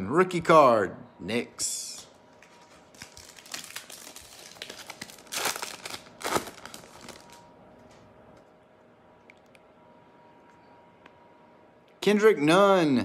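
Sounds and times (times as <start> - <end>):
wrapper crinkling and tearing: 2.5 - 7.5.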